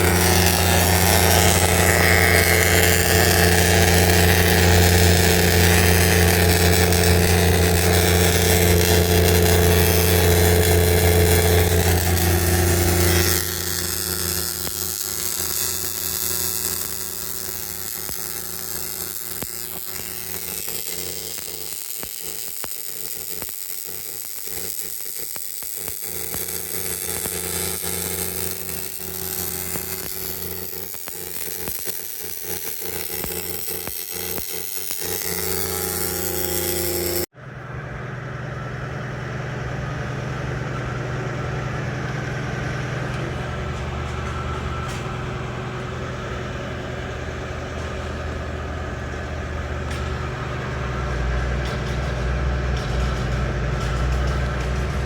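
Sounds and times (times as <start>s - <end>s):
steady low hum: 0.0s - 23.9s
boring machine whine: 0.0s - 55.0s.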